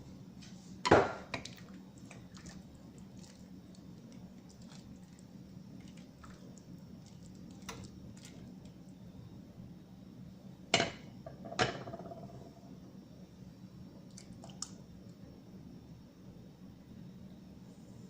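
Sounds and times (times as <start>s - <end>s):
steady low hum: 0.0s - 18.0s
soft wet squishing: 1.4s - 9.0s.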